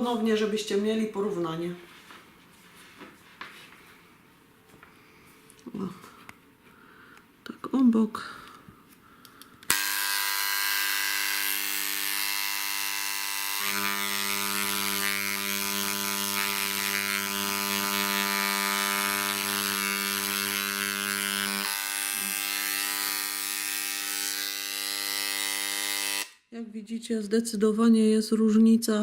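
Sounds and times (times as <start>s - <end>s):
engraver buzzing on wood: 9.7s - 26.4s.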